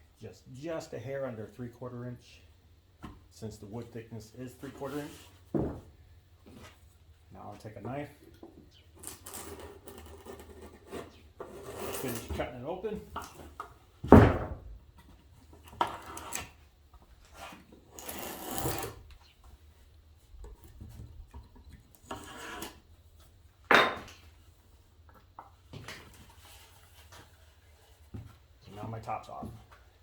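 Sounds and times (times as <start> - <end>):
knife scraping through wood: 9.0 - 12.3, 15.8 - 16.6, 17.4 - 19.0, 22.0 - 22.8.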